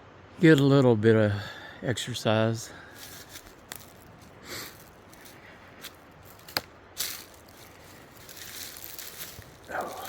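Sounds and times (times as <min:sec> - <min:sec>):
footsteps crunching on rough ground: 0:02.9 - 0:10.0.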